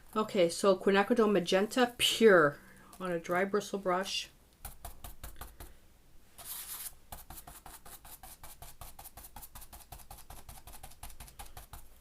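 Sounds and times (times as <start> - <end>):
stencil brush tapping paper: 4.6 - 5.8, 6.4 - 12.0.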